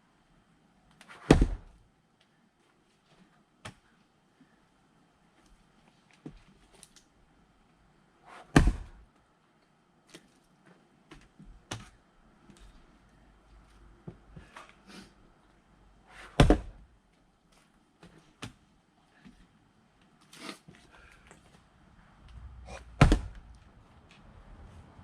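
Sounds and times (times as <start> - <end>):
axe striking firewood: 1.3 - 1.7, 8.5 - 9.0, 16.3 - 16.8, 22.7 - 23.5.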